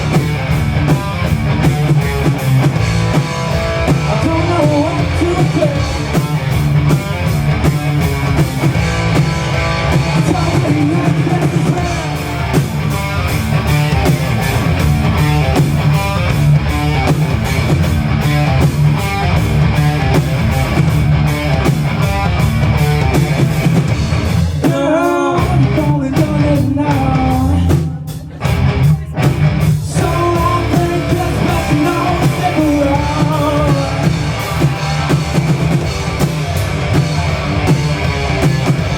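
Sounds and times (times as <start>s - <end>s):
drums: 0.0s - 38.9s
guitar: 0.0s - 38.9s
rock band playing: 0.0s - 38.9s
person singing: 4.0s - 6.2s, 10.1s - 12.3s, 24.6s - 34.2s.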